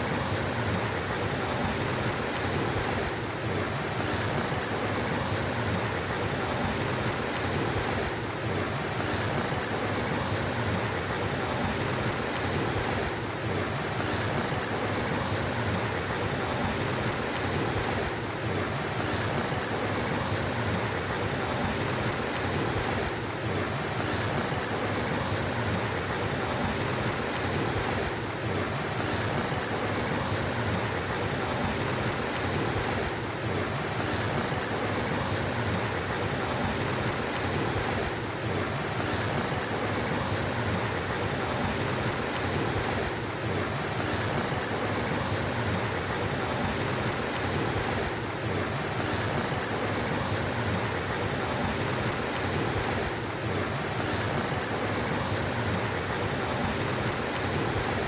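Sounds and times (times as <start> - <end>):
water rushing: 0.0 - 58.0.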